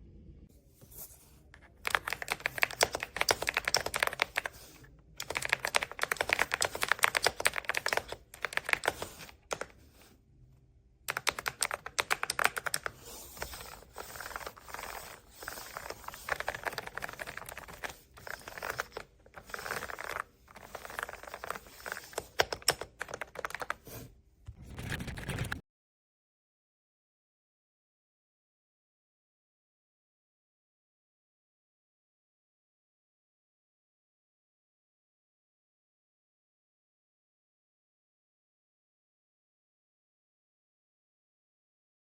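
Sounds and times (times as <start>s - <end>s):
mechanical keyboard typing: 1.8s - 9.7s, 11.1s - 23.8s, 24.5s - 25.6s.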